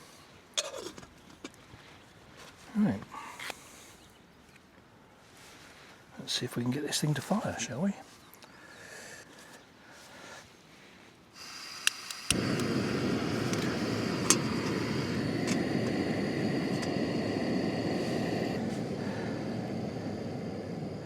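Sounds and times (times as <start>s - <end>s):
piezo igniter clicks: 11.4s - 18.6s
burner flaring with crackles: 11.4s - 21.0s
gas hissing from stove: 11.4s - 21.0s.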